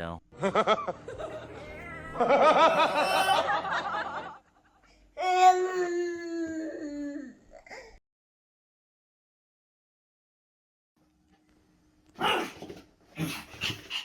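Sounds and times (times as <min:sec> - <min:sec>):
long falling tone: 0:01.0 - 0:03.8
baby giggling: 0:02.2 - 0:04.0.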